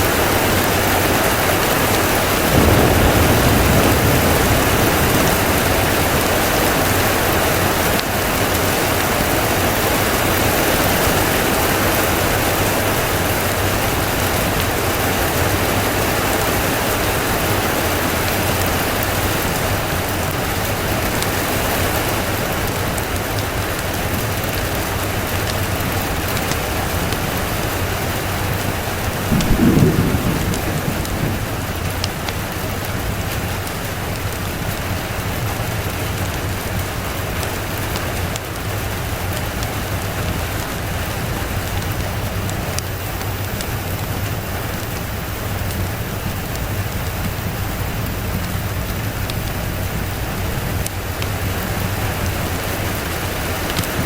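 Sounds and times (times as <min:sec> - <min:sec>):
steady rain hiss: 0:00.0 - 0:54.0
low rumble of thunder: 0:01.3 - 0:10.9, 0:27.3 - 0:34.7.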